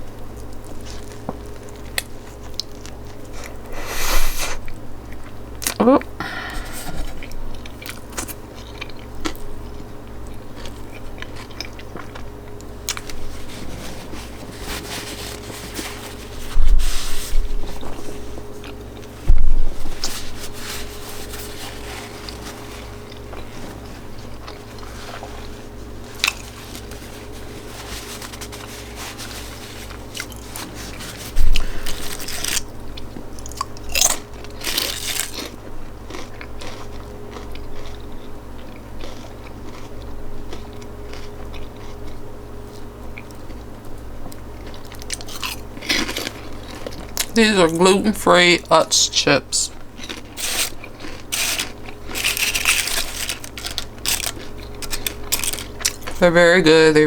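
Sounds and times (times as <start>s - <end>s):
person biting and chewing: 0.6s - 17.8s, 26.1s - 42.2s, 44.6s - 47.4s, 49.7s - 56.2s.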